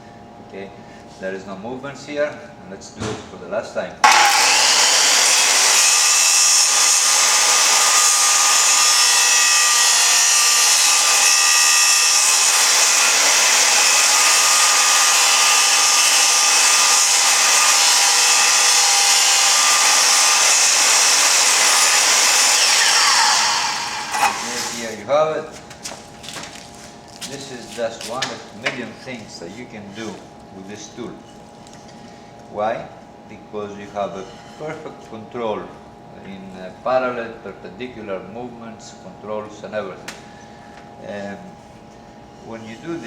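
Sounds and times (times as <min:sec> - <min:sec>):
circular saw cutting wood: 0:04.0 - 0:25.0.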